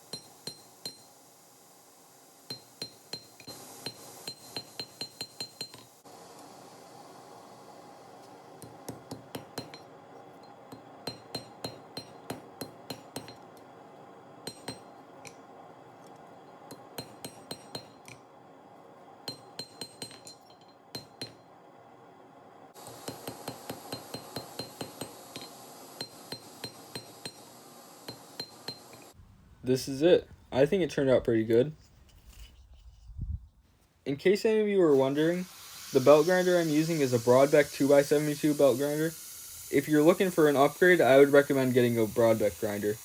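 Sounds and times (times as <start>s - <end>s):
hammer striking blade on anvil: 0.1s - 1.1s, 2.5s - 6.0s, 8.6s - 13.5s, 14.4s - 15.4s, 16.7s - 18.2s, 19.3s - 21.4s, 22.8s - 29.1s.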